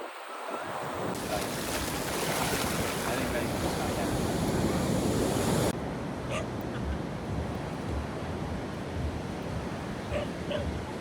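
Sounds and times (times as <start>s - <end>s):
surf washing on shore: 0.0s - 5.7s
wind buffeting microphone: 0.5s - 5.8s.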